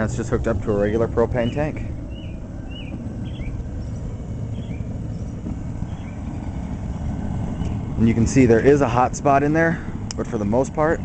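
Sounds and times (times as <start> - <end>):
gas forge burner rumbling: 0.0 - 11.0.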